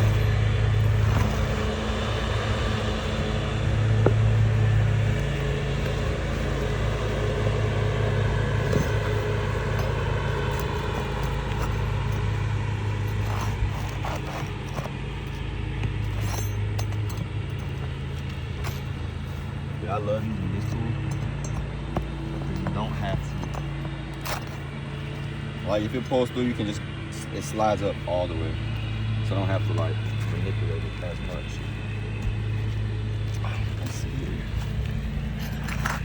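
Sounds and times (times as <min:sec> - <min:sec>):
lawnmower engine running: 0:00.0 - 0:36.0
light scrapes and clicks: 0:08.7 - 0:19.5, 0:32.2 - 0:36.0.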